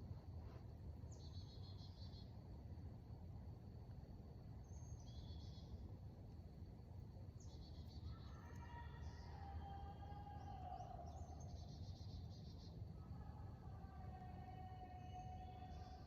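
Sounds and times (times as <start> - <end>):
distant drawn-out wail: 8.3 - 11.3, 13.0 - 16.0.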